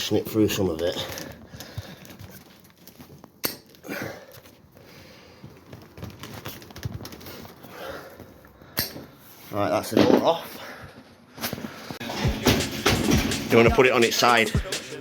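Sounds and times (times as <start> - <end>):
metal knocks and clicks: 12.2 - 13.8.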